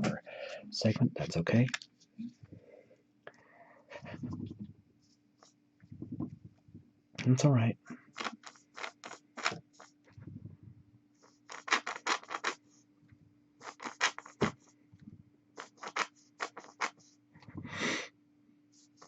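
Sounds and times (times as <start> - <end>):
steady low hum: 0.0 - 8.2, 9.6 - 11.2, 17.0 - 18.9
sharp scratching strokes: 8.2 - 10.0, 11.2 - 12.6, 13.6 - 14.7, 15.6 - 17.2.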